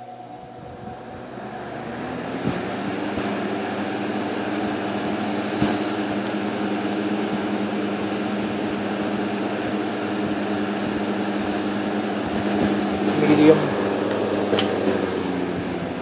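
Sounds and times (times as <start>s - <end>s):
fan motor hum: 0.0s - 16.0s
window fan rushing air: 0.0s - 16.0s
switch click: 14.0s - 14.8s.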